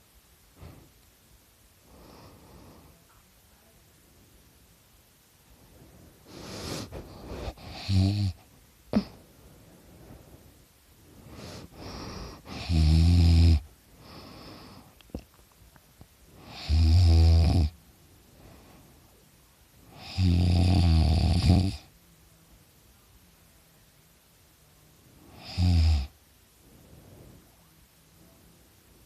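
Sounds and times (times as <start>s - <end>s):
soft breaths: 0.4s - 12.8s, 13.6s - 16.8s, 17.7s - 20.2s, 20.8s - 29.0s
person snoring loudly: 6.8s - 8.4s, 11.8s - 13.6s, 16.4s - 17.8s, 19.9s - 21.8s, 25.3s - 26.1s.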